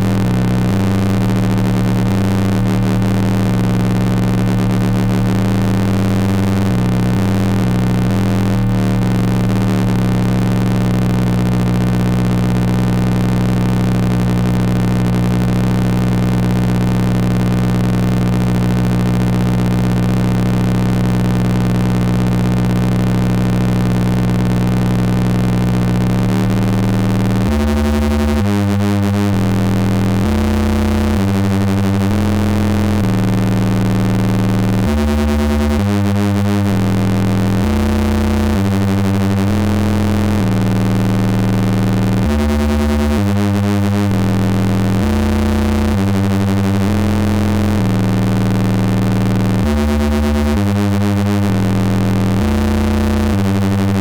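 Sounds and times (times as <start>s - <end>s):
buzzing synth drone: 0.0s - 54.0s
harsh synth noise: 0.0s - 54.0s.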